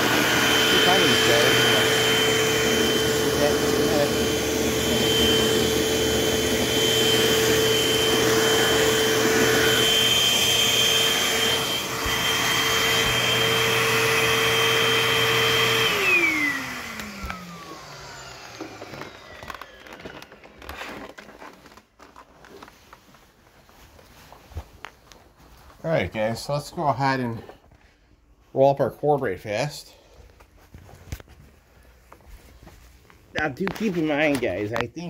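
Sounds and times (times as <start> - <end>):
vacuum cleaner motor whine: 0.0 - 22.8.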